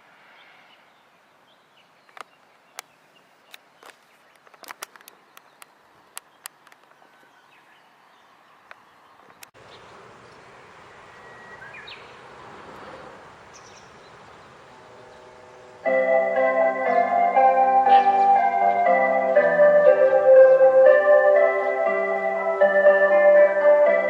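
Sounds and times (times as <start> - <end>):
bird chirps: 5.2 - 12.4, 13.5 - 15.4.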